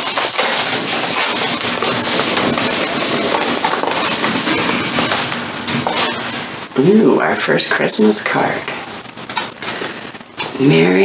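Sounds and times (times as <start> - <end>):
packaging crinkling and tearing: 0.0 - 6.3.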